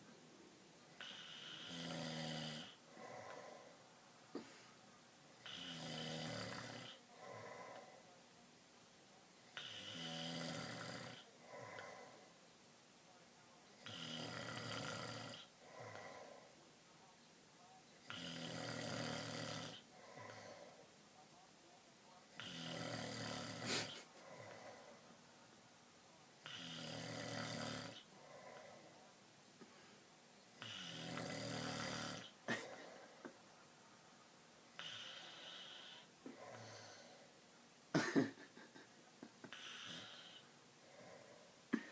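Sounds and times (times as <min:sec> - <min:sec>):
man snoring loudly: 0:01.0 - 0:02.8, 0:05.4 - 0:07.0, 0:09.6 - 0:11.3, 0:13.8 - 0:15.5, 0:18.1 - 0:19.8, 0:22.4 - 0:24.0, 0:26.4 - 0:28.1, 0:30.6 - 0:32.3
soft breath: 0:02.7 - 0:05.0, 0:06.9 - 0:08.3, 0:11.2 - 0:12.4, 0:15.6 - 0:16.7, 0:23.6 - 0:25.2, 0:28.0 - 0:30.7, 0:39.5 - 0:41.9.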